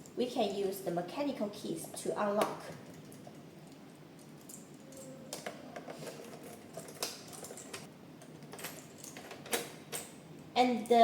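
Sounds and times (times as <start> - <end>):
key turning in lock cylinder: 2.8 - 10.1.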